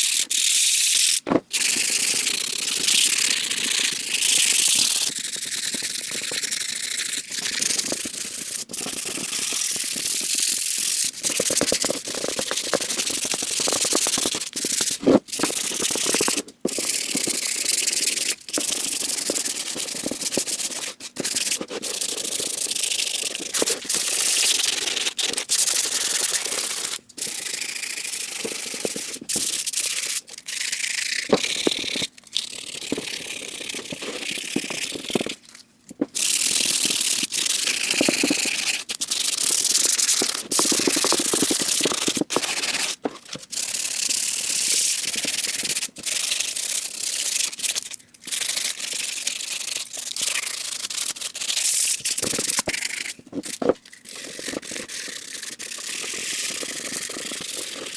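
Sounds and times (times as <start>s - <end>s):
sandpaper scratching: 9.0s - 27.4s, 28.1s - 35.4s, 36.2s - 43.2s.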